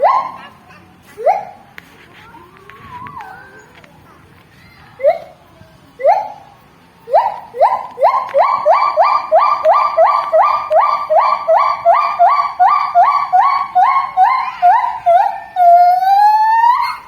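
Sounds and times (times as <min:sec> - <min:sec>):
gibbon siren-like call: 0:00.0 - 0:00.5, 0:06.0 - 0:06.4, 0:07.1 - 0:17.0
gibbon hooting call: 0:00.0 - 0:00.6, 0:06.0 - 0:06.5, 0:07.1 - 0:17.0.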